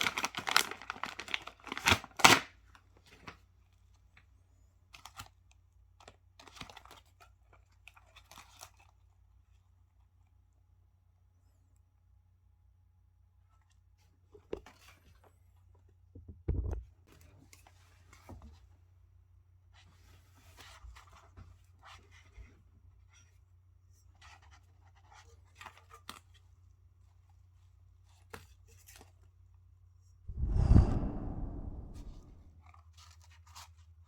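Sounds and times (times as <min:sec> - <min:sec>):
low steady hum: 0:30.3 - 0:32.5.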